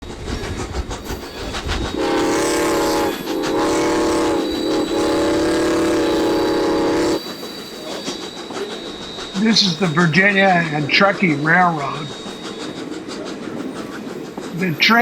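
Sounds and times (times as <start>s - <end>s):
train running noise: 0.0s - 15.0s
steam locomotive whistle: 1.0s - 15.0s.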